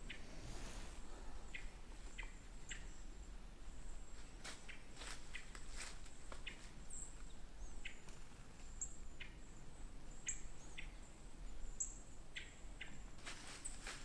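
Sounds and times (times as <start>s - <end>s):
small bird chirping: 1.5s - 3.1s, 4.6s - 5.6s, 6.4s - 8.1s, 8.7s - 13.8s
dry leaves rustling: 4.1s - 7.3s, 13.1s - 14.0s.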